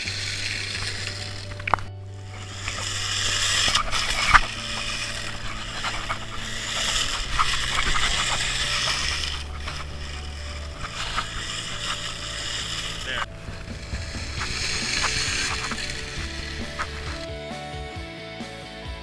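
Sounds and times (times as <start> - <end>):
music with low bass notes: 0.0 - 19.0
loud rushing hiss: 2.6 - 17.6.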